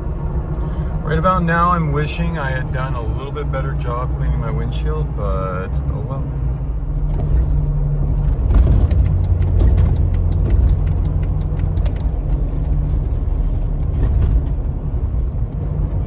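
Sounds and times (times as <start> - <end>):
engine and road rumble: 0.0 - 16.0
small clicks: 8.9 - 12.4.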